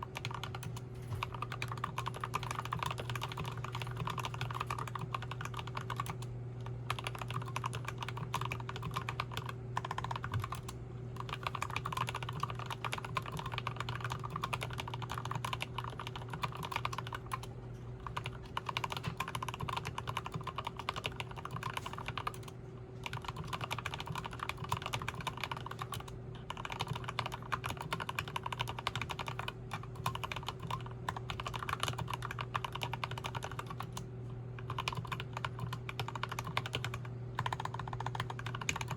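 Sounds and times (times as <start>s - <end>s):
mechanical keyboard typing: 0.0s - 6.3s, 6.9s - 38.9s.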